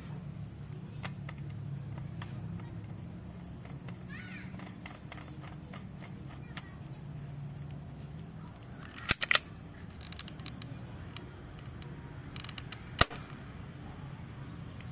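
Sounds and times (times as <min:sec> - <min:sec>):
airsoft pistol snaps: 0:08.9 - 0:09.5, 0:12.4 - 0:13.4.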